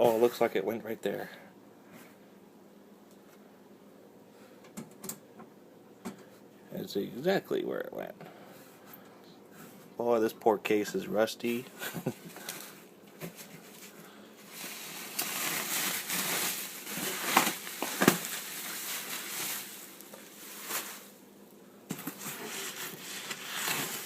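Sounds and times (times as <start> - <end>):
cardboard rustling and crinkling: 12.4 - 21.2, 21.9 - 24.0.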